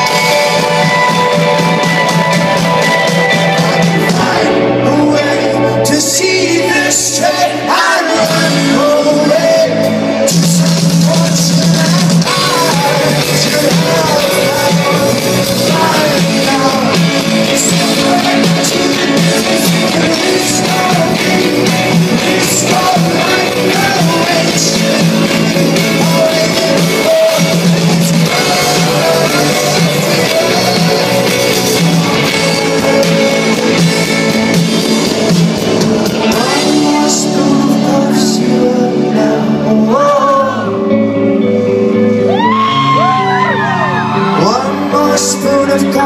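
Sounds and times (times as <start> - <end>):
live rock band playing: 0.0 - 46.0
person singing: 0.0 - 46.0.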